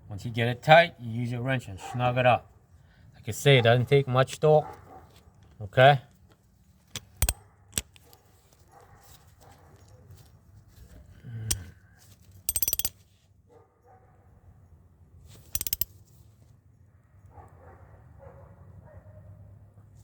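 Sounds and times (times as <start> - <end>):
metallic tool handling clicks: 6.9 - 8.2, 12.5 - 13.0, 15.4 - 15.9
ratchet wrench clicking: 12.5 - 12.9, 15.5 - 15.9.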